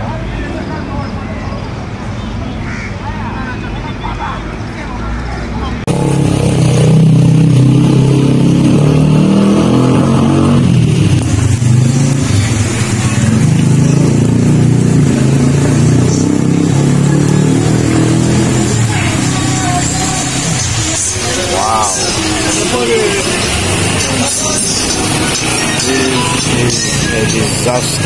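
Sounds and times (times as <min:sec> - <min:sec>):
vehicle engine revving: 0:05.7 - 0:28.0.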